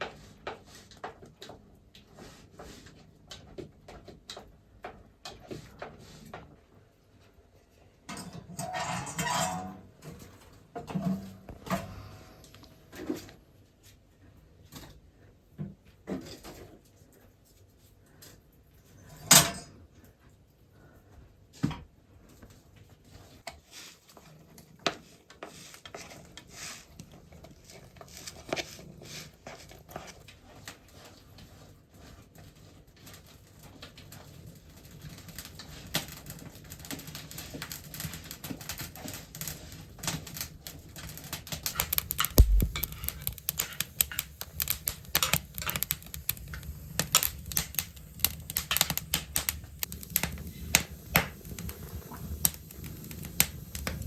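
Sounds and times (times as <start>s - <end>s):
irregular clicking and tapping: 41.0s - 54.0s
heavy knock: 42.4s - 42.9s.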